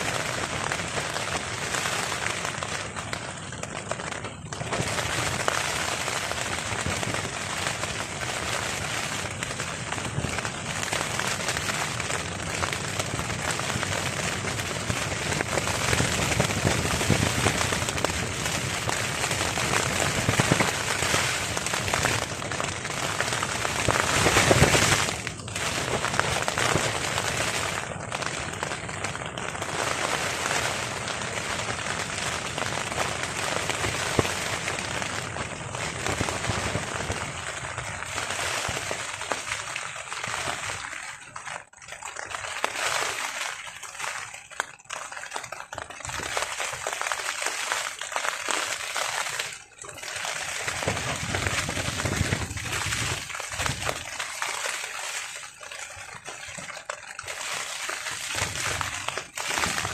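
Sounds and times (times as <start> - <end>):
rain pattering on a tarp: 0.0 - 59.9
gusting wind: 50.9 - 53.9.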